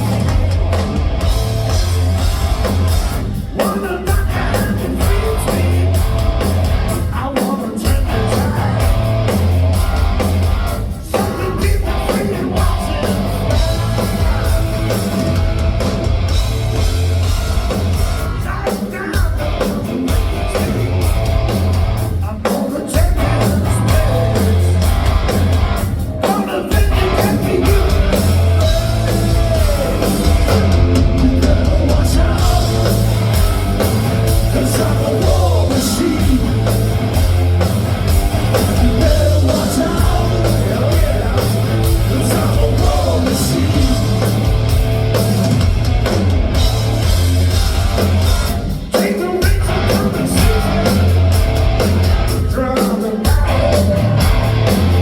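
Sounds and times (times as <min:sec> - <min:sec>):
rock band playing: 0:00.0 - 0:55.0
person singing: 0:26.2 - 0:33.0, 0:34.4 - 0:36.7, 0:38.6 - 0:44.3, 0:52.3 - 0:54.4.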